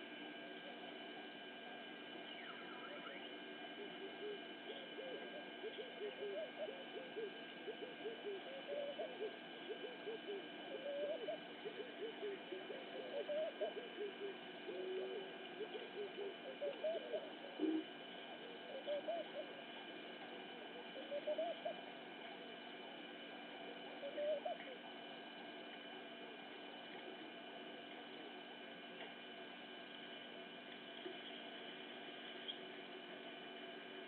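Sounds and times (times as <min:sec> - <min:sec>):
chorus of animal calls: 0:02.2 - 0:19.7, 0:20.6 - 0:21.9, 0:23.9 - 0:24.9.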